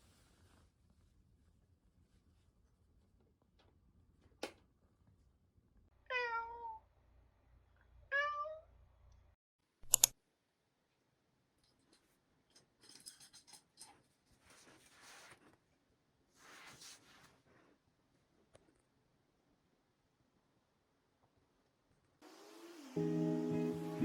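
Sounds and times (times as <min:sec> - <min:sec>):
cat meowing: 0:06.1 - 0:06.8, 0:08.1 - 0:08.6
sharp click: 0:09.8 - 0:10.2
soft rustling: 0:13.8 - 0:18.8.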